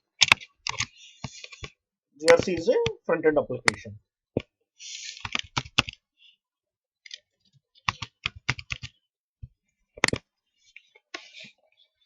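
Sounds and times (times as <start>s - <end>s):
computer keyboard typing: 0.2s - 3.0s, 5.2s - 6.0s, 7.8s - 9.0s.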